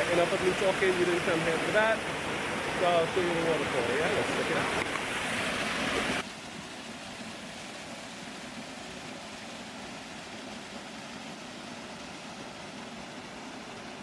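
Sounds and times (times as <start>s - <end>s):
water rushing over rocks: 0.0s - 14.0s.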